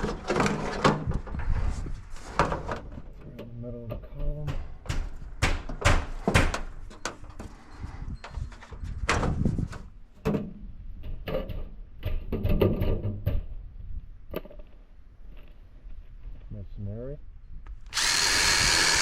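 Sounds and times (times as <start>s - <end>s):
metal downspout knocking and clattering: 2.4s - 7.5s, 8.6s - 13.6s.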